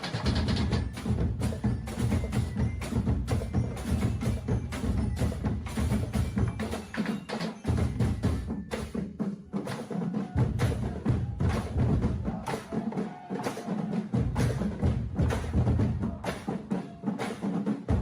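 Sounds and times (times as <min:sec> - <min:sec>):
clacking percussion strikes: 0:00.0 - 0:12.8.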